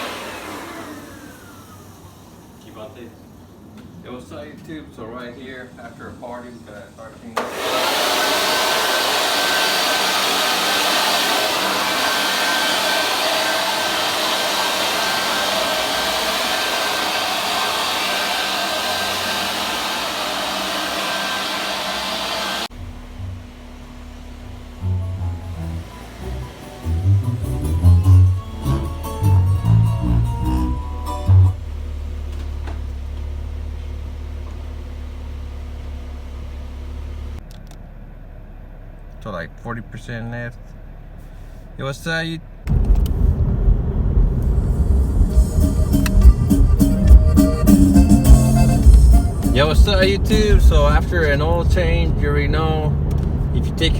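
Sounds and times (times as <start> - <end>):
electric blower motor whine: 0.0 - 2.6, 7.4 - 37.4, 45.0 - 51.2
car engine idling: 11.4 - 53.9.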